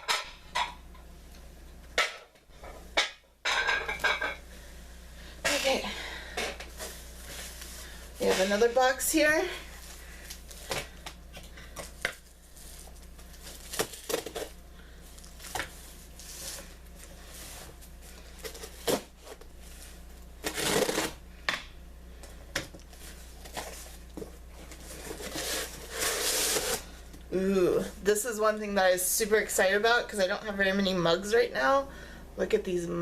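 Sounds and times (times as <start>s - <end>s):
packing material rustling: 23.0s - 26.9s.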